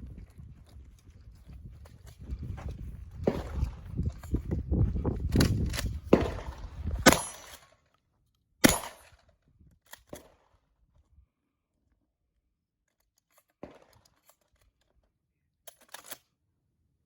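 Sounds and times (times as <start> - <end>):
clicks and handling noise: 3.2 - 10.4, 12.8 - 16.3
shotgun fire: 6.1 - 7.5, 8.6 - 9.1.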